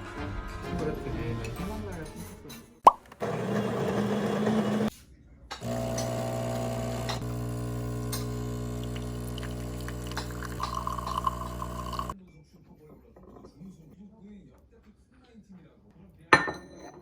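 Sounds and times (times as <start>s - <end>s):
steady machine hum: 5.6s - 12.1s.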